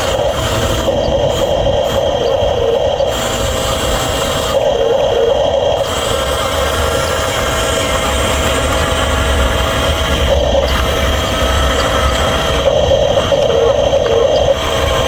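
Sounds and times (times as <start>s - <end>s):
low rumble: 0.0s - 4.4s
small electric motors whining: 0.0s - 15.0s.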